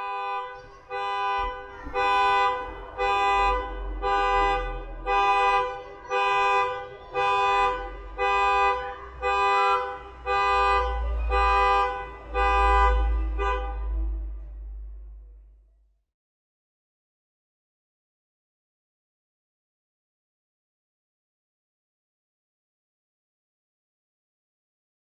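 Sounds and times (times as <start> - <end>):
car horn honking: 0.0 - 15.6.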